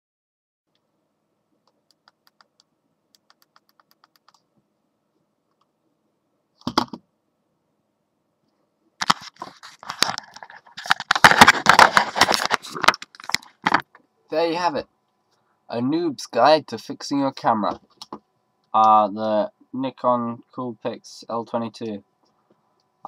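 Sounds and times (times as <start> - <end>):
plastic clattering and rattling: 9.0 - 13.9.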